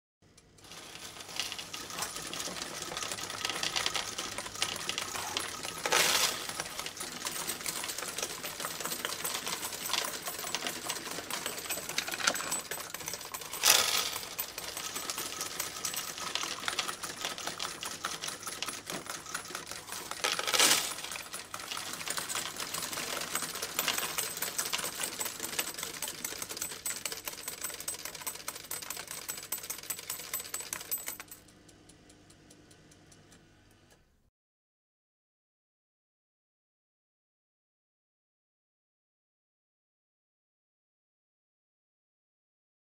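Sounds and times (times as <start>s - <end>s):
coins rattling through coin counter: 0.5s - 31.6s.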